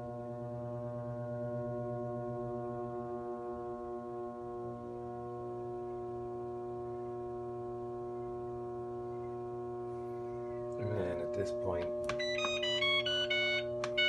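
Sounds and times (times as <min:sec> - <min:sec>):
washing machine electrical hum: 0:05.5 - 0:14.0.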